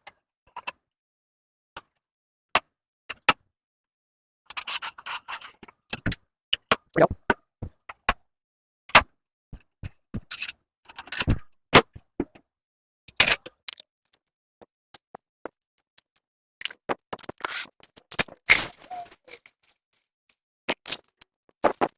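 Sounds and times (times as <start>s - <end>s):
metal frame pieces clicking and scraping: 17.2s - 19.7s.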